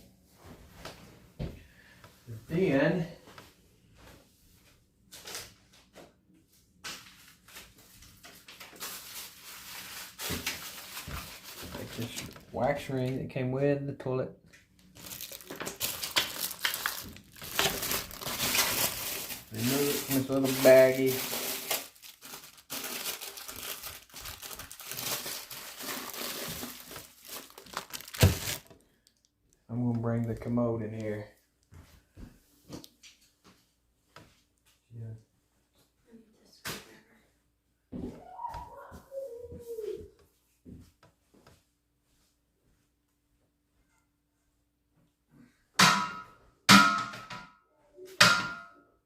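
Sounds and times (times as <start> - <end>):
plastic bag crinkling: 8.5 - 12.8, 14.8 - 29.3.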